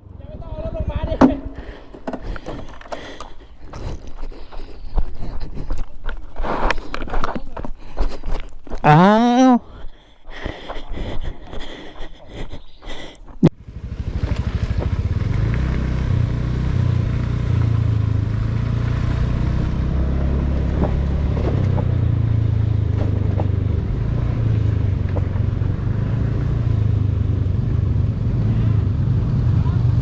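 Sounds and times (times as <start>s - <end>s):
motorcycle engine running: 13.5s - 30.0s.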